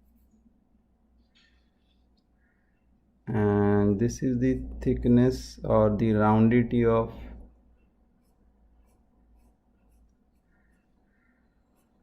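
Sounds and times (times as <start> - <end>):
pencil sketching on paper: 0.0 - 0.4, 7.8 - 12.0.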